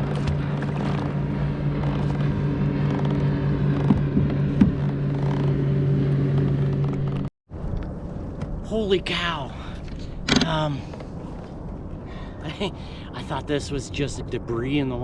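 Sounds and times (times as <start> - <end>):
small boat motor humming: 0.0 - 7.3.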